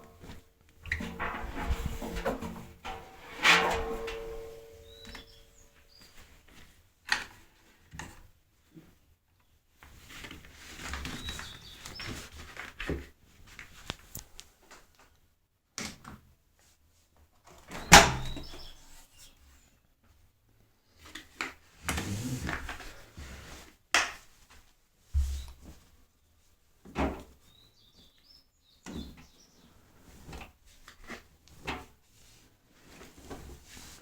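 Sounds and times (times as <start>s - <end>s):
rustling and bumping: 0.0s - 5.8s
knocks and clunks: 0.9s - 5.4s
bang: 1.0s - 5.6s.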